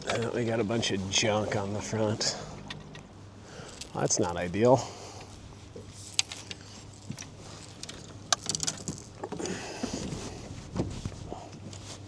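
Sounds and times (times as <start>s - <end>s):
steady low hum: 0.0s - 11.8s
gear clicking and rattling: 0.0s - 11.9s.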